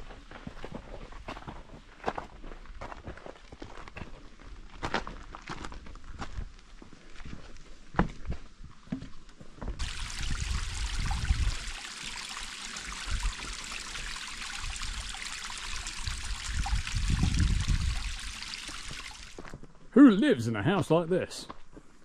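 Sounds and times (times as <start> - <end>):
stream water rushing: 9.8 - 19.4.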